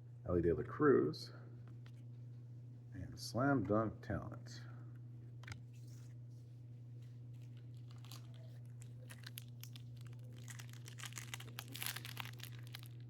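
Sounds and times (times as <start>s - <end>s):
low electrical hum: 0.0s - 13.0s
plastic wrapper crinkling and tearing: 7.3s - 13.0s.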